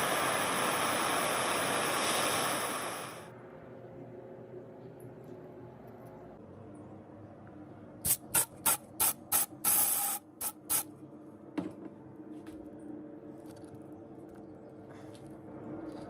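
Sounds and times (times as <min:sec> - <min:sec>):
hissing spray bursts: 0:00.0 - 0:03.2, 0:08.1 - 0:10.9.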